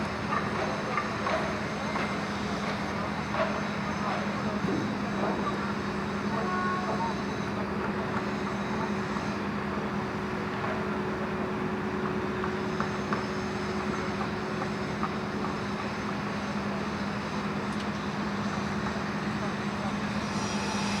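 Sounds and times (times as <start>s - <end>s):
diesel engine humming: 3.9s - 17.2s.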